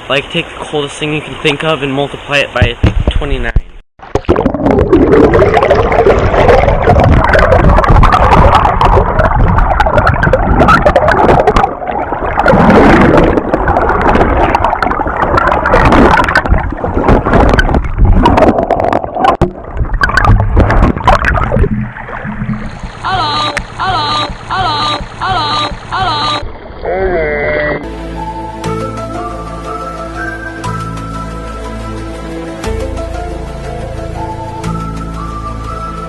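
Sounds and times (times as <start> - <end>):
river water splashing: 27.8 - 36.0.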